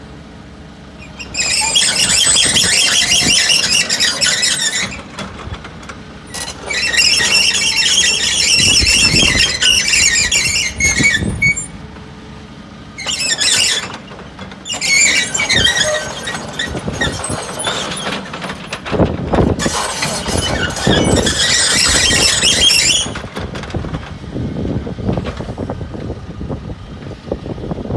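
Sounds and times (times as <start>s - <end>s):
excavator engine running: 0.0s - 27.9s
loud high-pitched squealing: 1.0s - 5.6s, 6.3s - 11.9s, 13.0s - 23.3s.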